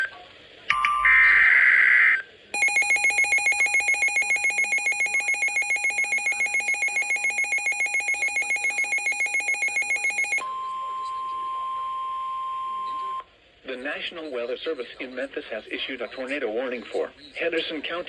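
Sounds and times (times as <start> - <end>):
harsh data-like burst: 2.6 - 10.4
shrill alarm beeping rapidly: 2.6 - 10.4.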